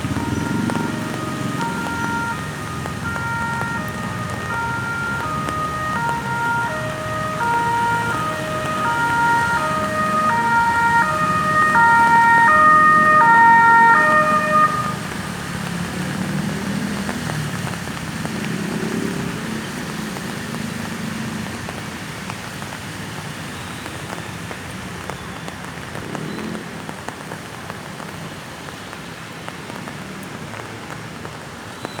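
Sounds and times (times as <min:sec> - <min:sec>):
ambulance siren: 0:00.0 - 0:16.5.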